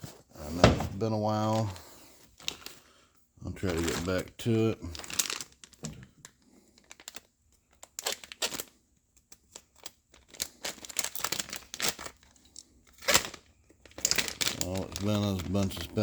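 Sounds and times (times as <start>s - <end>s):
packaging crinkling and rustling: 1.0s - 2.9s, 3.5s - 16.0s.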